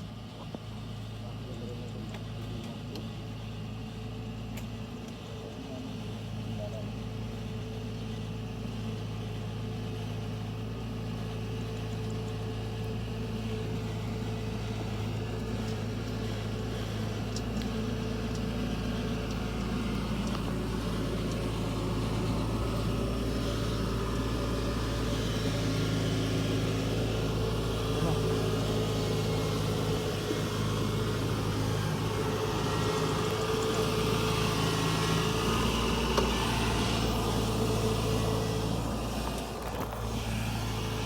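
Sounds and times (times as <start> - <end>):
diesel engine droning: 0.0 - 41.0.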